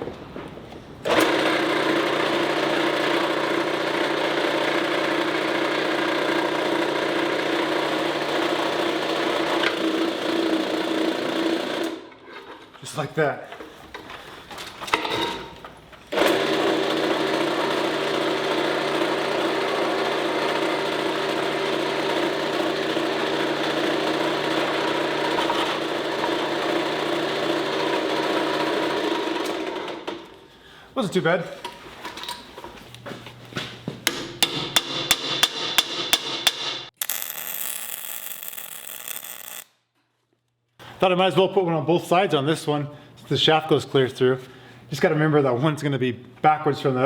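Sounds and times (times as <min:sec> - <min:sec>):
hammer striking metal: 0:34.1 - 0:37.3
drill boring into steel: 0:37.0 - 0:39.7.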